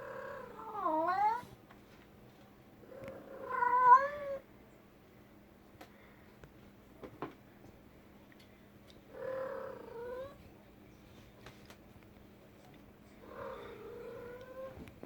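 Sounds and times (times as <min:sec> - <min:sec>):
cat meowing: 0:00.4 - 0:01.5, 0:03.0 - 0:04.4.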